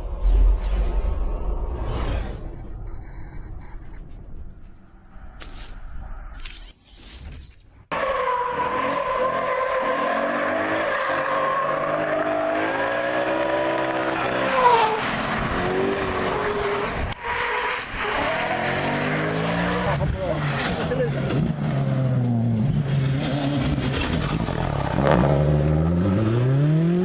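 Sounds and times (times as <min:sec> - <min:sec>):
rally car engine at full throttle: 0:07.9 - 0:27.0.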